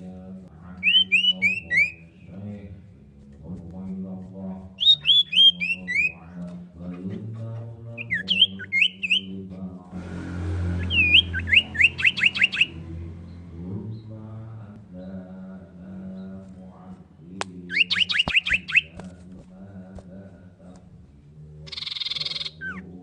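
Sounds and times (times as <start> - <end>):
bird singing whistled notes: 0.8 - 2.3, 4.8 - 6.2, 8.0 - 9.3, 10.7 - 14.1, 17.7 - 19.0, 21.7 - 22.8
low steady hum: 9.9 - 17.8.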